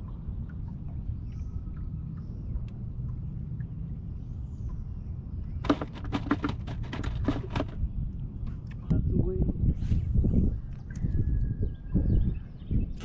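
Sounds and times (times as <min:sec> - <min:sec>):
quick sharp clicks and knocks: 0:05.6 - 0:07.8.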